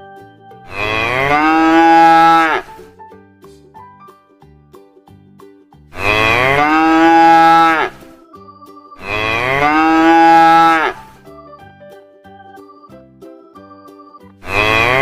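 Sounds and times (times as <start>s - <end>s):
faint background music: 0.0s - 15.0s
cow mooing: 0.7s - 2.7s, 6.0s - 8.0s, 9.0s - 11.1s, 14.5s - 15.0s.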